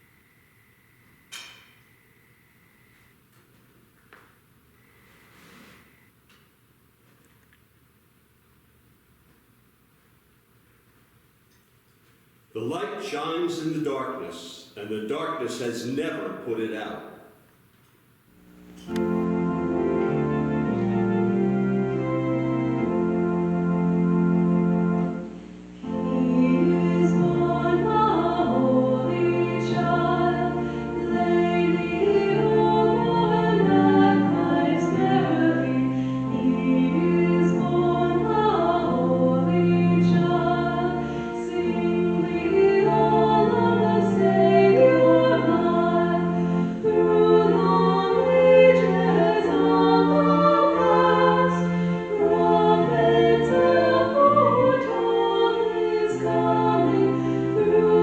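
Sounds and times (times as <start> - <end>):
keyboard sustained chords: 18.6 - 58.0
choir singing a hymn: 25.8 - 58.0.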